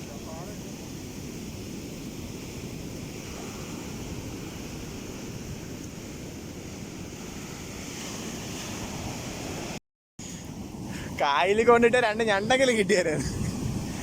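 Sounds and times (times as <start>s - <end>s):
surf washing onto beach: 0.0s - 14.0s
wind rumbling on microphone: 0.0s - 14.0s.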